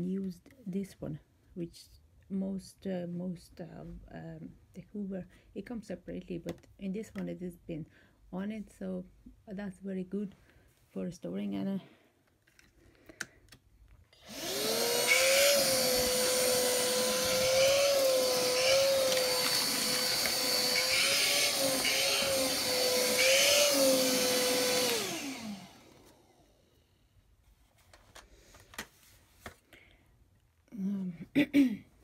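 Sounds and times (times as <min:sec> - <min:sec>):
vacuum cleaner motor whining: 0:14.2 - 0:26.7.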